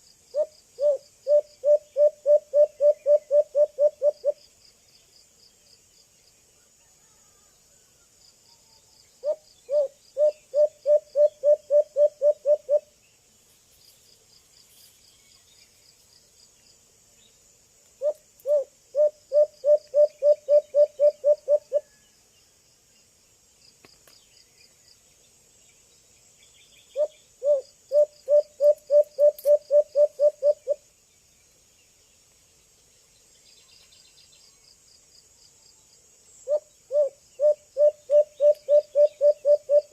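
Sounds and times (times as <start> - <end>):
insects trilling: 0.0 - 39.9
dove hooting: 0.3 - 4.4, 9.2 - 12.9, 18.0 - 22.0, 27.0 - 30.8, 36.5 - 39.9.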